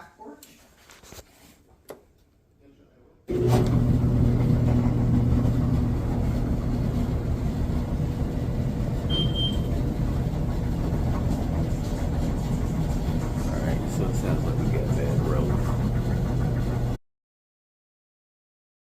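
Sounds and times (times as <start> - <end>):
clothes dryer hum and rumble: 3.3 - 17.0
brief high tone: 9.1 - 9.7.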